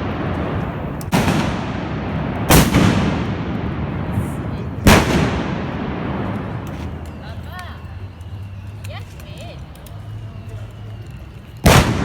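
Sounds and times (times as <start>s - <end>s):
gun blasts with echo: 0.0s - 6.6s, 11.6s - 12.0s.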